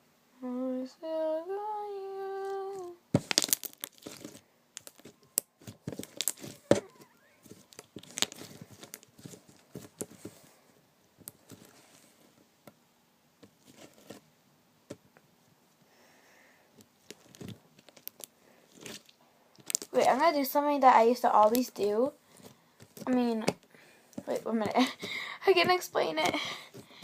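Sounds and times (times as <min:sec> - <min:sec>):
slime crackling and popping: 0:02.6 - 0:10.2, 0:16.8 - 0:20.3.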